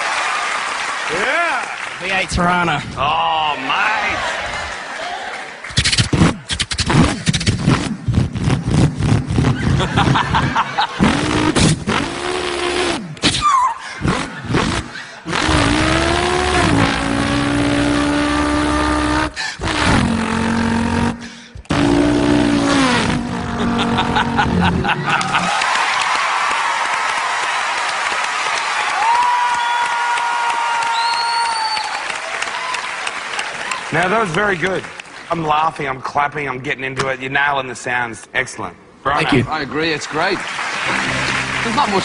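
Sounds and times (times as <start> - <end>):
man imitating engine with mouth: 5.7 - 9.8, 10.9 - 25.4.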